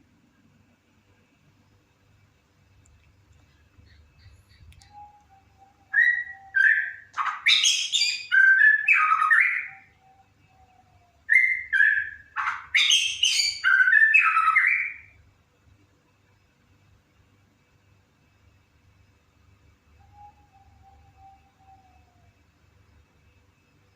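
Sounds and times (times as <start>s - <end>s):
songbird whistling and rasping: 3.8s - 15.2s, 20.0s - 22.2s.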